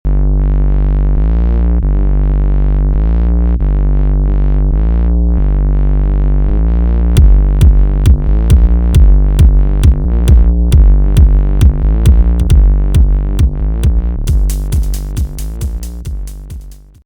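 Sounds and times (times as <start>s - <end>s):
swept synthesizer bass drone: 0.0s - 17.0s
drum machine hits: 7.2s - 17.0s.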